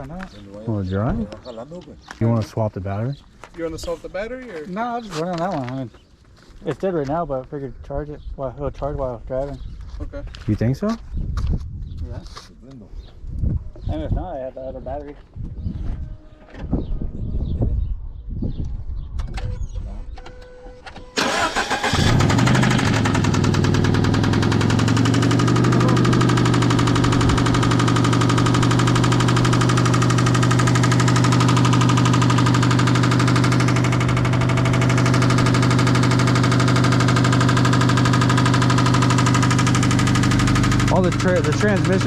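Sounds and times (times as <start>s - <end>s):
car engine starting and idling: 20.7s - 42.0s.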